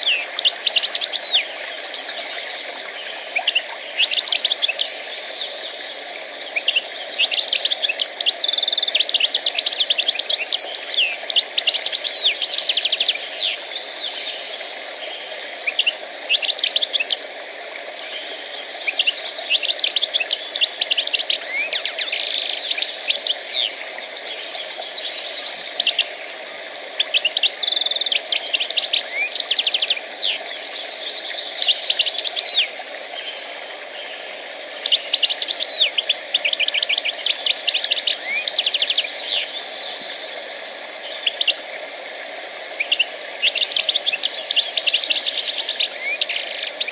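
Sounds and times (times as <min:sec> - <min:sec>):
small songbirds chirping and trilling: 0:00.0 - 0:17.4, 0:18.0 - 0:26.1, 0:27.0 - 0:41.7, 0:42.6 - 0:46.9
steady background hiss: 0:00.0 - 0:46.9.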